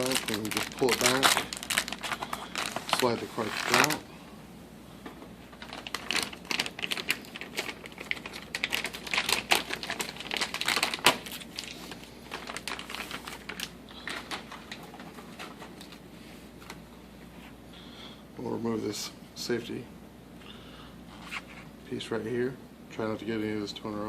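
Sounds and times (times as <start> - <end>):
bubble wrap crinkling: 0.0 - 4.1, 5.4 - 16.0.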